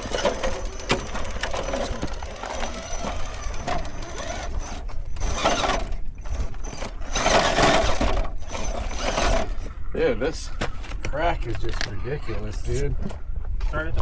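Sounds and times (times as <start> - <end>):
small electric motors whirring: 0.0 - 9.7
tires clicking and knocking on rock: 0.0 - 9.7.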